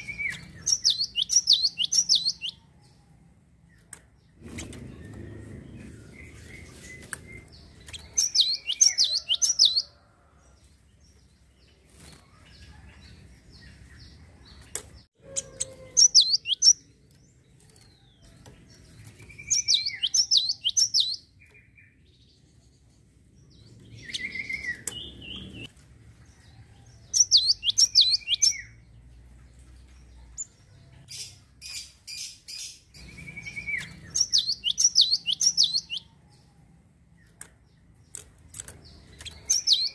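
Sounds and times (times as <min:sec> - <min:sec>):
sparrow singing: 0:00.0 - 0:10.4, 0:11.0 - 0:25.7, 0:26.3 - 0:39.9.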